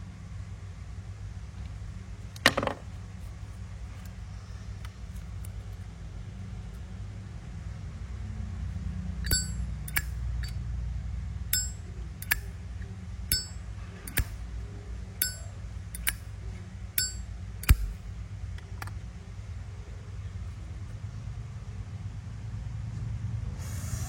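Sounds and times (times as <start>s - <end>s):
lighter lid ringing clink: 9.2s - 10.6s, 11.5s - 12.5s, 13.3s - 14.4s, 15.2s - 16.2s, 17.0s - 18.0s
lighter lid closing click: 9.3s - 10.1s, 11.5s - 12.5s, 14.1s - 14.4s, 16.0s - 16.2s, 17.0s - 18.0s.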